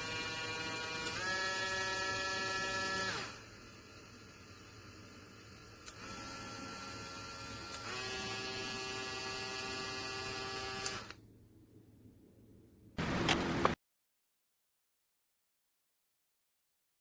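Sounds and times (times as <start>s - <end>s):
rotary tool motor whining: 0.0s - 11.2s.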